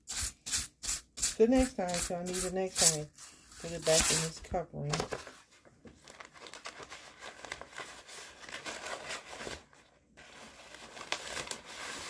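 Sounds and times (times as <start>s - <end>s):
wrapper crinkling and rustling: 3.7s - 12.0s.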